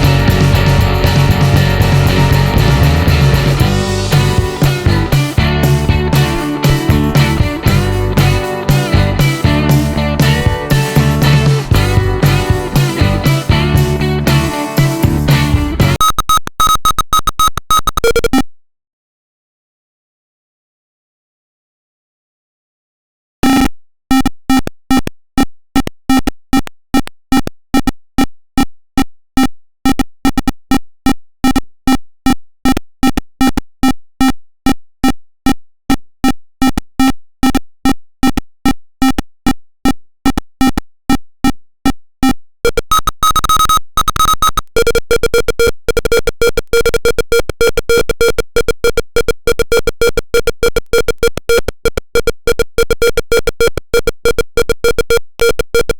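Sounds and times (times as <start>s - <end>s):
piezo buzzer beeping: 0.0s - 18.4s, 42.2s - 55.9s.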